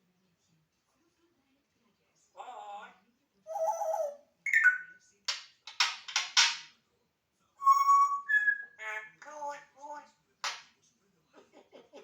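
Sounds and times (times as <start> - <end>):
parrot talking: 2.4 - 5.0, 7.6 - 10.2
parrot whistling: 7.6 - 9.1.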